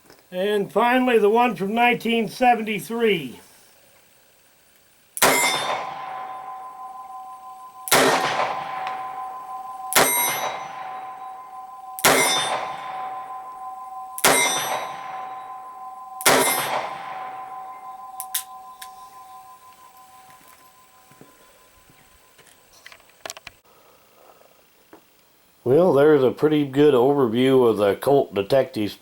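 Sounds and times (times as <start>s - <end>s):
revolver shots: 5.2s - 7.2s, 7.9s - 13.6s, 14.2s - 18.3s
metallic ring of steel target: 5.2s - 21.7s.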